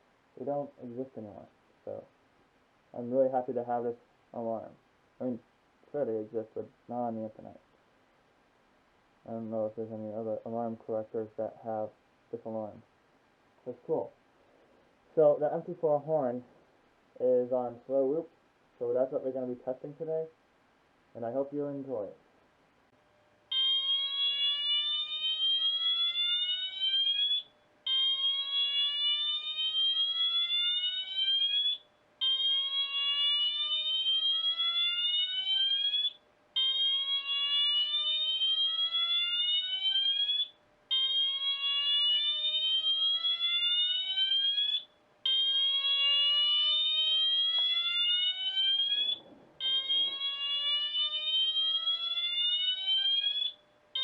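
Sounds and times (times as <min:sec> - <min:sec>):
fire alarm horn whooping: 0:23.5 - 0:54.0.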